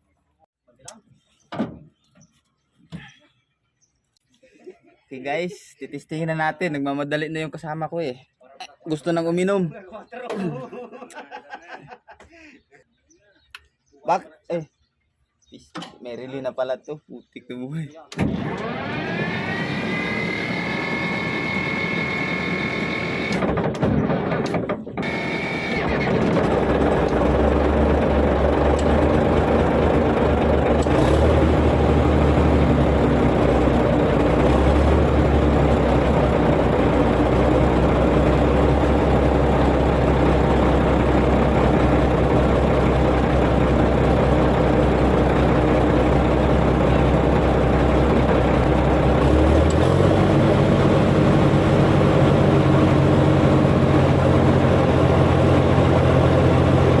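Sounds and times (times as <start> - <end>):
bulldozer diesel engine running: 18.3 - 57.0.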